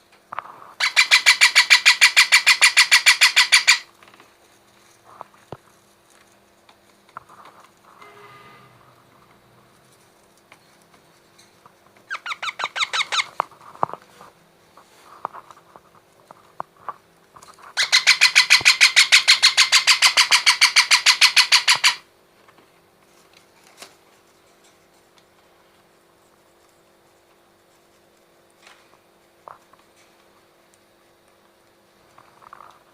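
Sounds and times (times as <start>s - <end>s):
baby parrot calling: 0.8s - 3.9s, 12.1s - 13.3s, 17.8s - 22.0s.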